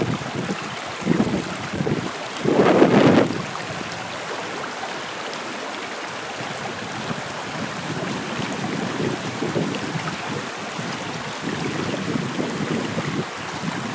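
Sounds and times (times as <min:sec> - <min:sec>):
water rushing: 0:00.0 - 0:13.9.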